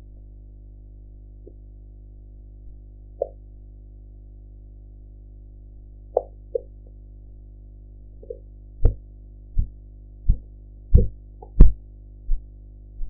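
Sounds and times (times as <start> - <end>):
steady low hum: 0.0 - 13.0
low heartbeat thumps: 9.6 - 13.0.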